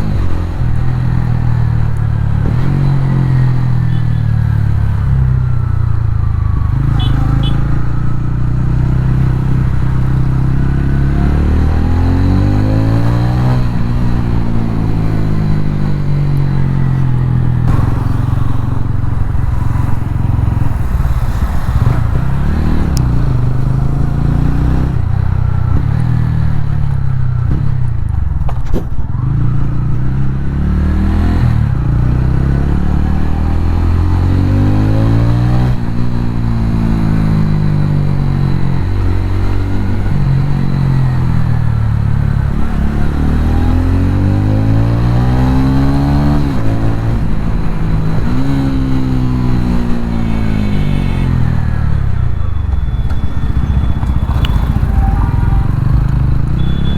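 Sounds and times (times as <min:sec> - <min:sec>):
motorcycle engine revving: 0:00.0 - 0:28.3, 0:29.2 - 0:56.9.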